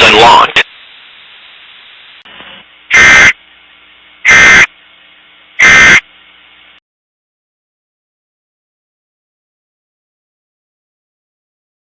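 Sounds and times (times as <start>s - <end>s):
faint steady hiss: 0.0s - 6.8s
harsh digital data bursts: 2.9s - 3.4s, 4.3s - 4.7s, 5.6s - 6.1s.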